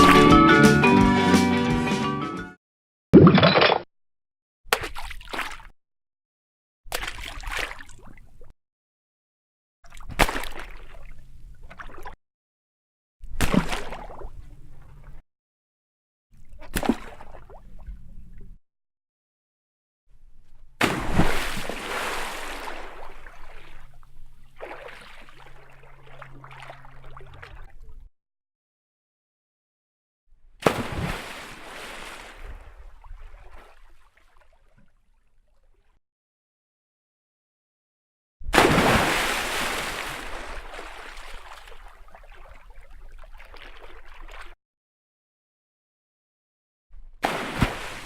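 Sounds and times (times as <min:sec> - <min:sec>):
water splashing and sloshing: 0:04.7 - 0:05.7, 0:06.9 - 0:08.5, 0:09.8 - 0:12.2, 0:13.2 - 0:15.2, 0:16.4 - 0:18.6, 0:20.5 - 0:28.1, 0:30.6 - 0:36.0, 0:38.5 - 0:44.6, 0:47.0 - 0:48.0
loud water splash: 0:20.8 - 0:23.4, 0:30.6 - 0:32.4, 0:38.5 - 0:41.5, 0:47.2 - 0:48.0.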